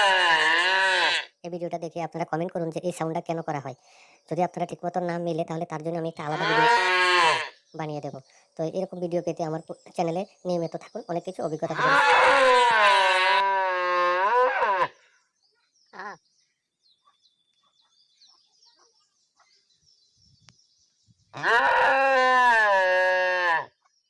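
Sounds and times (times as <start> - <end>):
cow mooing: 0.0 - 1.3, 6.4 - 7.5, 11.8 - 14.9, 21.4 - 23.7.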